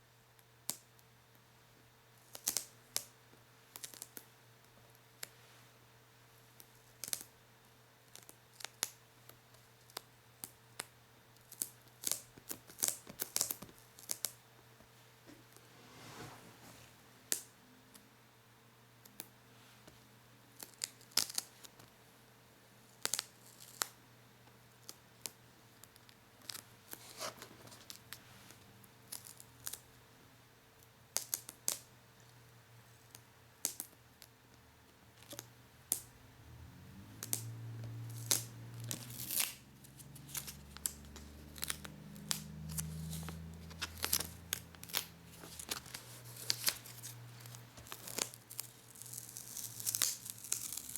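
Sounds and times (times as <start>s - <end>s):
paper and plastic crackling: 42.7s - 50.9s.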